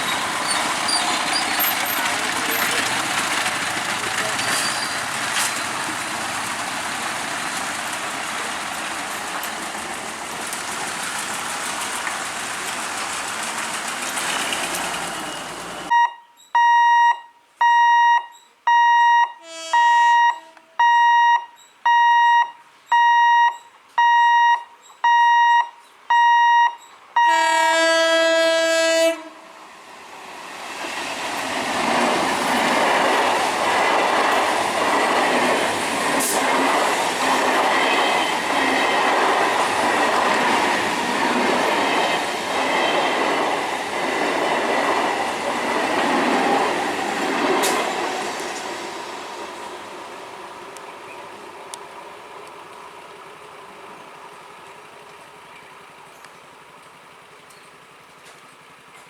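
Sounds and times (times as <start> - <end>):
train passing: 0.0 - 15.9, 27.1 - 58.0
train horn blasts: 19.4 - 20.8, 27.2 - 29.6.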